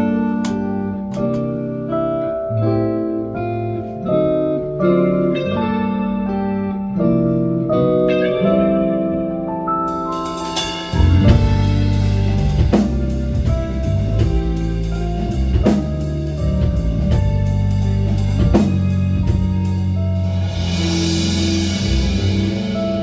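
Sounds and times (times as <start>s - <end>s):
bass guitar: 0.0s - 23.0s
electric guitar chords: 0.0s - 23.0s
drum kit beat: 9.8s - 23.0s.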